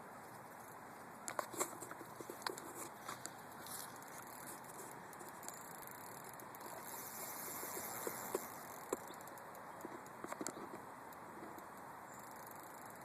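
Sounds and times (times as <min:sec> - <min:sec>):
faint outdoor background hiss: 0:00.0 - 0:13.0.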